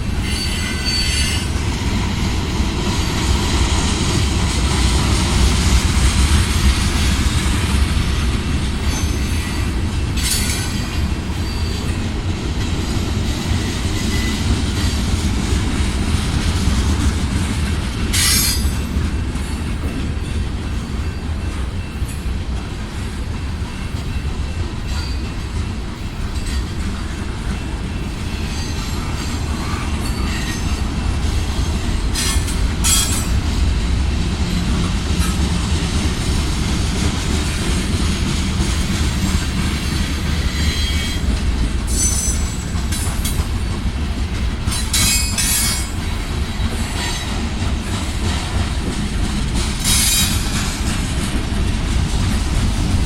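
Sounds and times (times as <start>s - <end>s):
train wheels rumbling on rails: 0.0s - 53.0s
wheel squeals: 0.2s - 1.5s, 41.9s - 43.8s.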